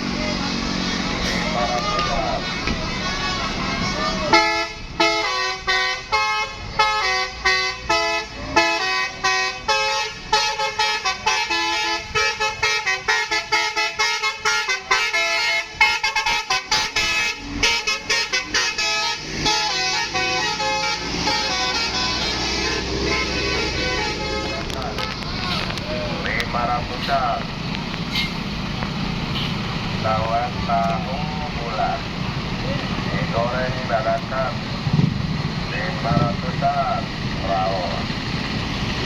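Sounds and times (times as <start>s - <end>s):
multi-tone bus horn tune: 0.0s - 25.8s, 29.3s - 29.7s.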